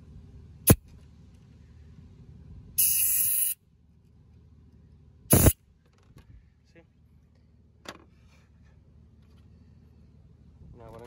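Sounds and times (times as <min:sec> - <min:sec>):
refrigerant hissing from valve: 0:02.8 - 0:03.6, 0:05.3 - 0:05.6.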